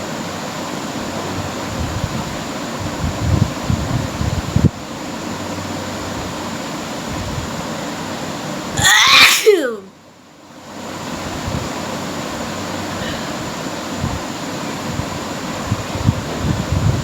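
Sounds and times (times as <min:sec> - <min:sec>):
woman sneezing: 0:08.8 - 0:09.9.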